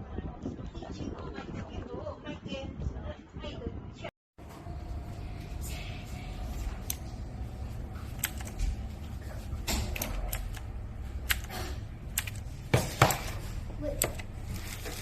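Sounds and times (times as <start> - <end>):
low steady hum: 4.0 - 15.0
sharp clicks: 8.1 - 8.8, 9.8 - 12.4.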